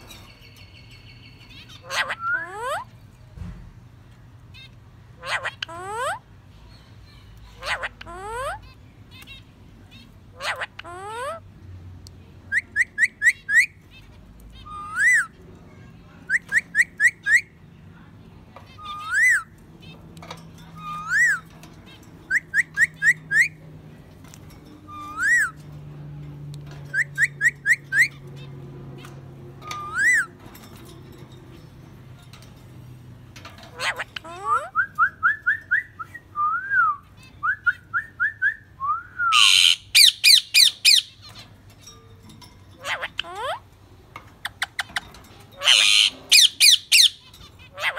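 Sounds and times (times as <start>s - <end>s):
parrot screeching and squawking: 1.6s - 2.9s, 5.2s - 6.3s, 7.6s - 9.3s, 10.3s - 11.5s, 14.6s - 15.4s, 18.7s - 20.0s, 20.8s - 23.6s, 24.9s - 25.6s, 26.9s - 30.4s, 33.5s - 34.9s, 39.3s - 41.6s, 42.8s - 43.7s, 44.5s - 47.9s
parrot whistling: 33.8s - 41.2s, 45.6s - 47.2s
parrot chirp-whistles: 34.5s - 41.0s.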